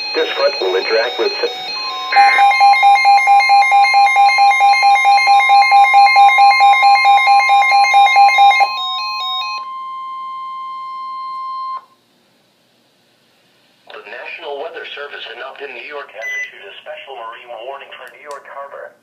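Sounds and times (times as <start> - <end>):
fast stepped electronic beeps: 0.0 - 5.0
steady warning alarm tone: 0.0 - 12.0.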